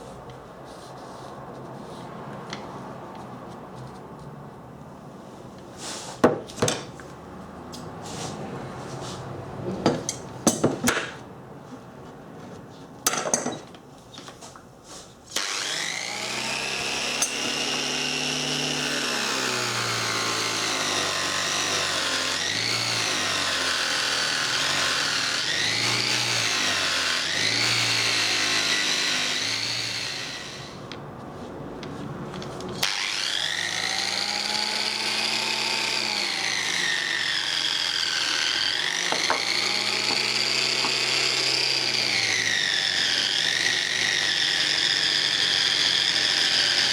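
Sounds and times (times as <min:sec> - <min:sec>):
power tool motor running: 0:15.4 - 0:30.8, 0:32.8 - 0:46.9.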